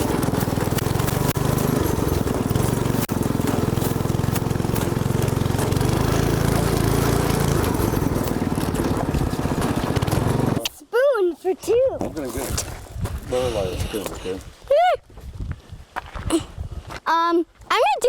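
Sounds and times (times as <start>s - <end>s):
go-kart engine running: 0.0s - 10.7s.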